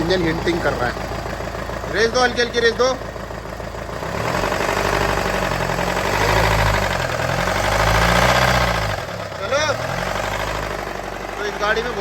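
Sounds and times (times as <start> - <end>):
car engine revving unevenly: 0.0 - 12.0.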